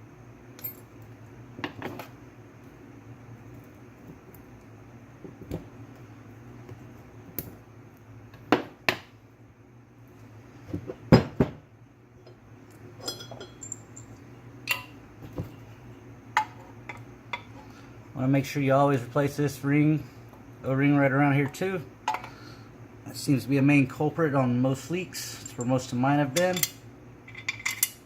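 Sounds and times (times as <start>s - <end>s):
metal parts clinking and tapping: 0.6s - 1.0s, 13.0s - 15.0s, 26.3s - 28.0s.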